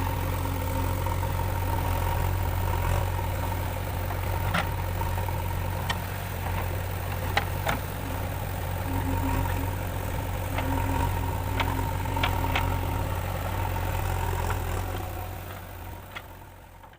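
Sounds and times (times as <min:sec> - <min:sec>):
diesel engine running: 0:00.0 - 0:16.9
faint steady whine: 0:05.2 - 0:16.2.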